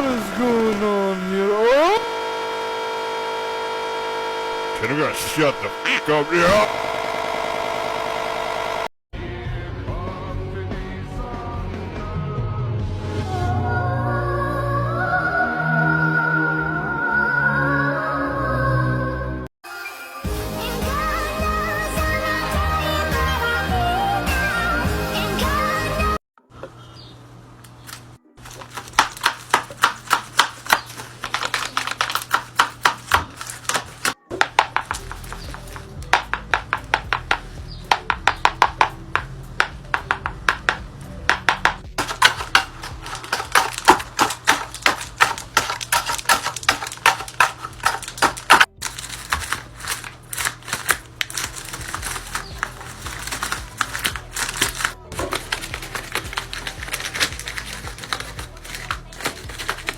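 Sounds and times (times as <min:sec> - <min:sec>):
paper clacking snaps: 0:27.6 - 0:38.8, 0:39.6 - 0:59.9.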